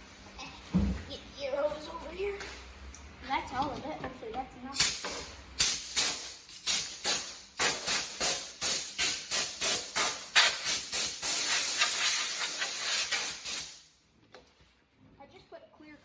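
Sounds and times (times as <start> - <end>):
compressed air hissing from hose: 4.8 - 13.9.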